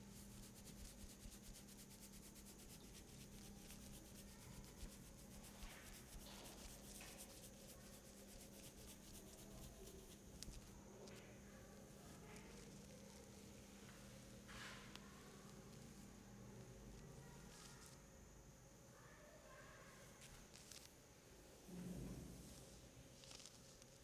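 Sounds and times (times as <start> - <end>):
low steady hum: 0.0 - 10.3
hands rubbing skin and hair: 0.0 - 10.6.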